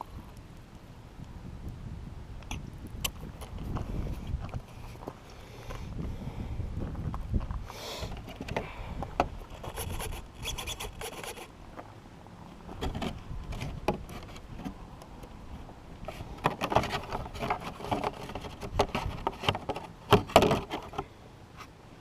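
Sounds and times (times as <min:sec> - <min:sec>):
wind rumble on microphone: 0:00.0 - 0:11.2, 0:12.6 - 0:19.8
toy truck being handled: 0:08.1 - 0:11.5, 0:16.1 - 0:21.7.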